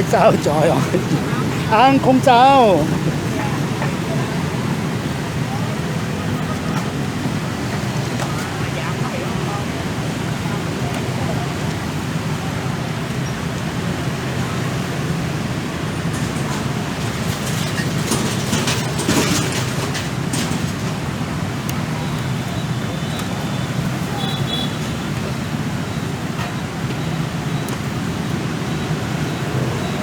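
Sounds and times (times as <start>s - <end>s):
street traffic noise: 0.0s - 30.0s
clinks and clatters: 16.1s - 21.1s.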